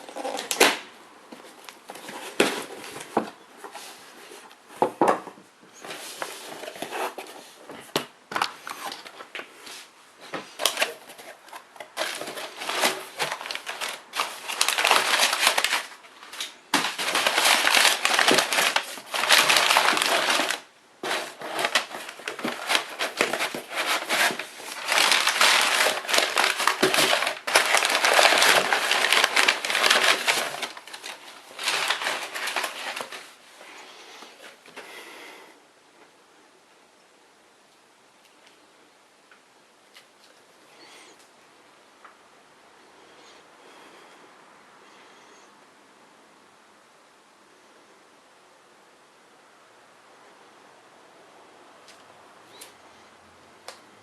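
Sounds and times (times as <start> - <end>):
packaging crinkling and crushing: 0.0 - 4.5, 8.3 - 9.5, 10.3 - 33.4.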